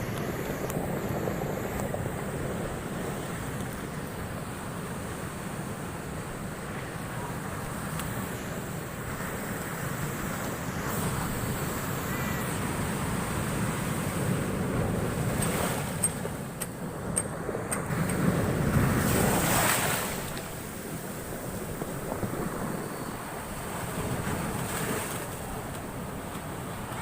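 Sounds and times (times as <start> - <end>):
storm surf breaking: 0.0 - 27.0
wind buffeting microphone: 0.0 - 27.0.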